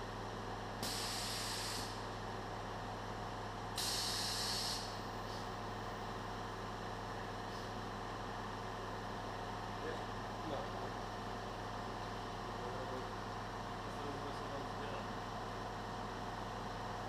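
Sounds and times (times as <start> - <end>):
compressed air hisses: 0.8 - 2.0, 3.8 - 5.0.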